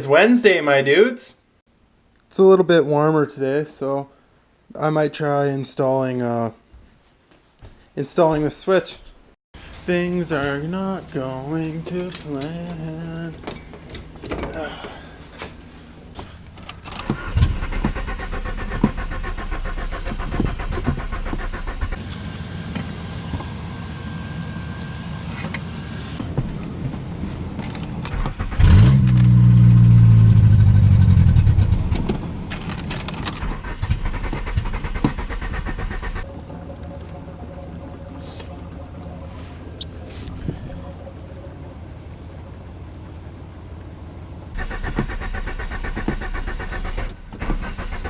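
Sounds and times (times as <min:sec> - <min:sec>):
engine revving: 0:28.3 - 0:32.2.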